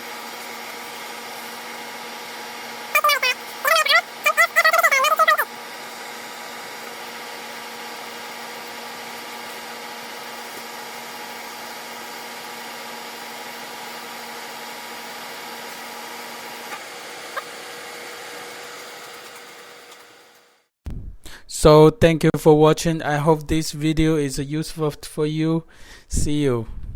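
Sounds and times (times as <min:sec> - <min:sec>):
dehumidifier fan rushing: 0:05.5 - 0:20.4.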